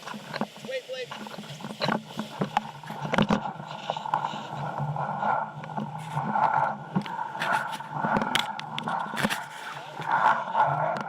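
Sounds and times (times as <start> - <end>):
knocks and scrapes: 0.0 - 11.0.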